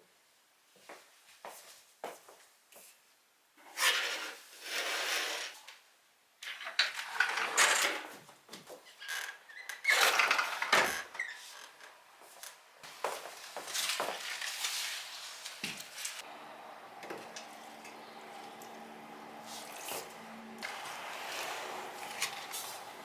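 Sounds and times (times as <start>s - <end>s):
water splashing: 16.2s - 23.0s.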